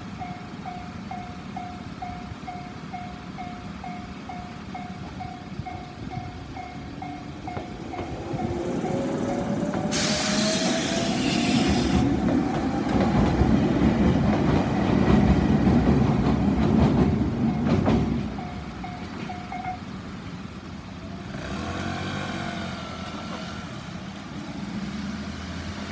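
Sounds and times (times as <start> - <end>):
train wheels rumbling on rails: 0.0 - 25.9
level crossing bell ringing: 0.2 - 9.0, 18.4 - 19.9
wheels clacking over rail joints: 0.2 - 22.0
air hiss: 9.4 - 12.2.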